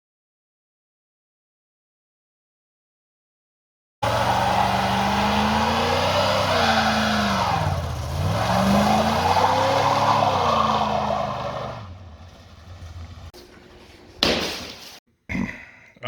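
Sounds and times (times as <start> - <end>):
car engine revving: 4.0 - 13.4
road tyre noise: 4.0 - 14.9.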